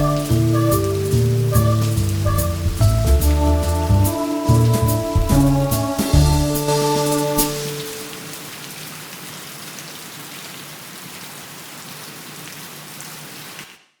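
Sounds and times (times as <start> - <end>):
held music notes: 0.0 - 8.4
steady rain falling: 0.0 - 14.0.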